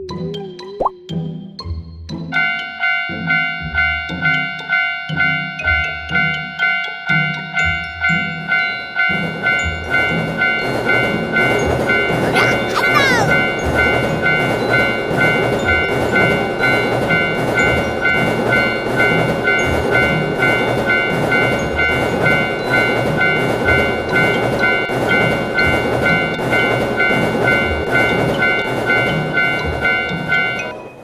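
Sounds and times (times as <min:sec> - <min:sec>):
train rumbling and clattering past: 0:09.0 - 0:12.2, 0:13.6 - 0:31.0.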